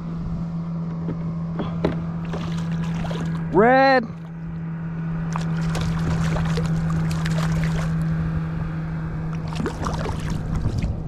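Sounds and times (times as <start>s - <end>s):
steady low hum: 0.0s - 11.0s
water sloshing and splashing: 2.2s - 3.5s, 5.2s - 8.1s, 9.3s - 11.0s
wind noise: 9.2s - 11.0s.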